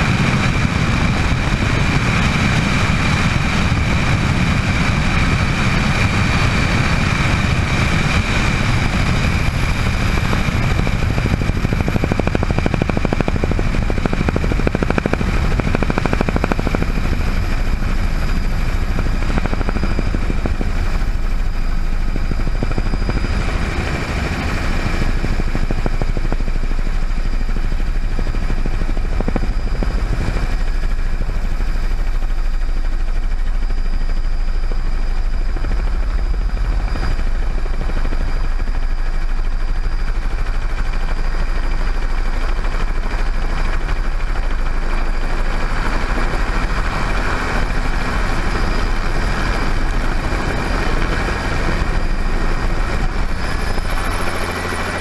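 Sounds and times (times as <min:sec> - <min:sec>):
helicopter rotor drone: 0:00.0 - 0:55.0
high turbine whine: 0:00.0 - 0:55.0.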